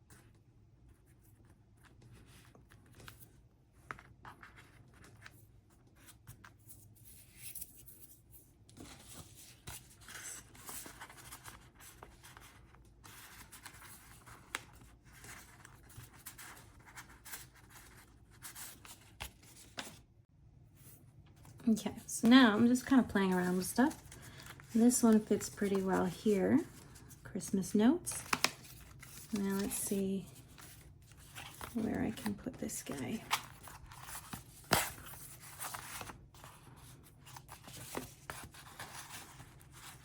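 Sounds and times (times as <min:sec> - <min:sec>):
paper rustling and scraping: 0:20.8 - 0:40.0.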